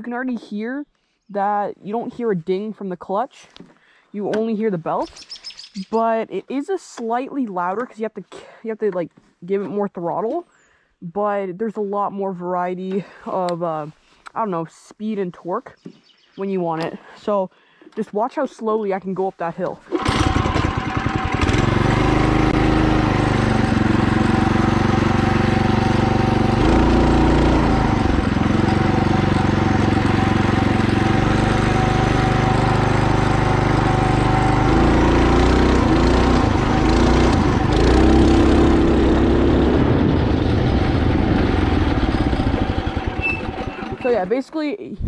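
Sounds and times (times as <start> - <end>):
small engine running under throttle: 19.9 - 44.2.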